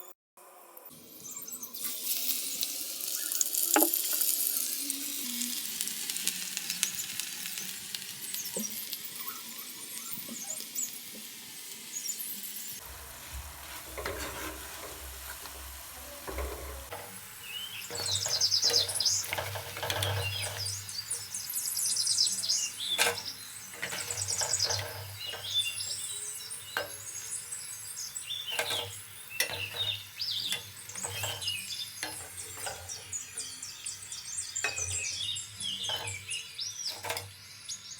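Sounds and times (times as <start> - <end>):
food sizzling in hot oil: 1.0 - 37.9
utensil clicking against pan: 12.8 - 37.4.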